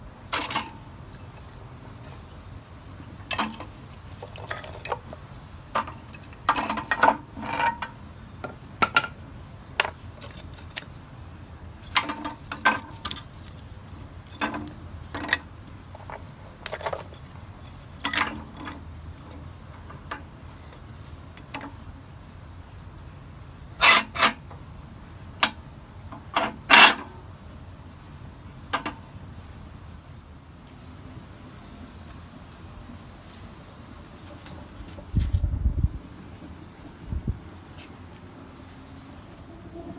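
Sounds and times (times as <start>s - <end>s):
steady low rumble: 27.4s - 39.9s.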